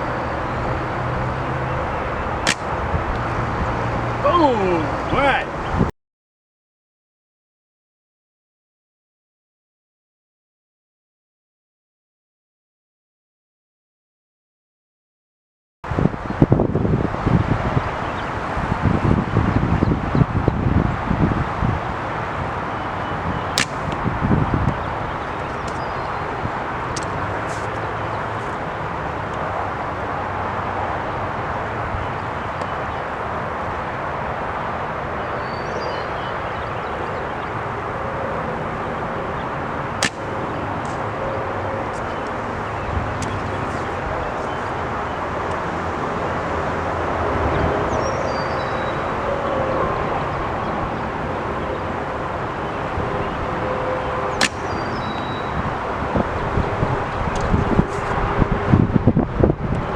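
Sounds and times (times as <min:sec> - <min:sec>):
wind buffeting microphone: 0:00.0 - 0:05.9, 0:15.9 - 0:59.9
sharp click: 0:02.4 - 0:02.7, 0:54.4 - 0:54.7.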